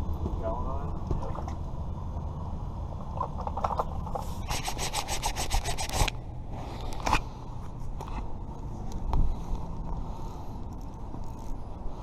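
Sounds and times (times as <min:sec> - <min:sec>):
rasping scrapes: 0:04.2 - 0:06.1.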